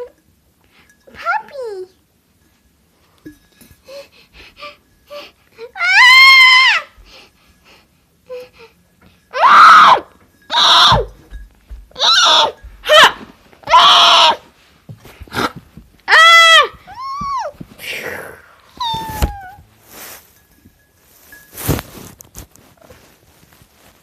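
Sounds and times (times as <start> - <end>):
child wailing and screaming: 5.7 - 7.0, 9.4 - 11.1, 12.0 - 14.4, 16.1 - 17.6, 18.8 - 19.6.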